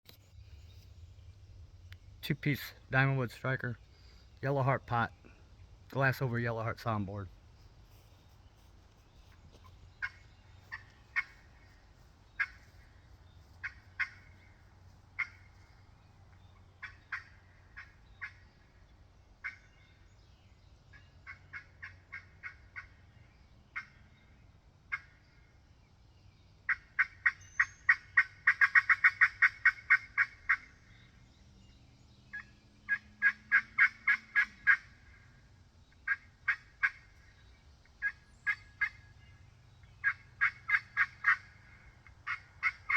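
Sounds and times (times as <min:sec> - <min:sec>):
turkey pot call yelps: 0:26.7 - 0:30.7, 0:32.4 - 0:35.2, 0:36.0 - 0:37.1, 0:38.0 - 0:39.1, 0:40.0 - 0:42.9.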